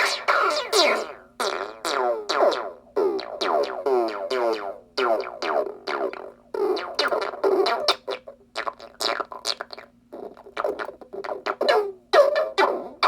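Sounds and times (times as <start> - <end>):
synthesizer blips sliding down: 0.0 - 1.2.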